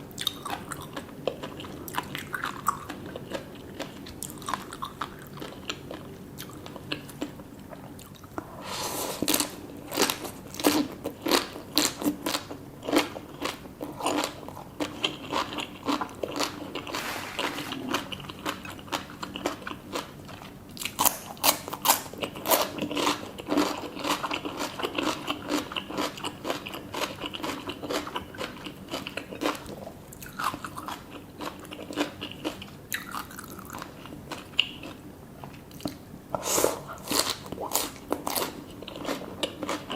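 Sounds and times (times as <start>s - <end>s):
crunchy food being chewed: 0.2s - 8.5s, 9.2s - 39.9s.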